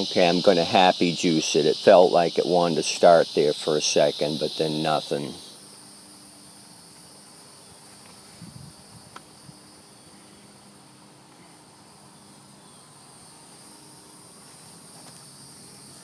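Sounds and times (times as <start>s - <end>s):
high-pitched insect chirring: 0.0s - 10.1s.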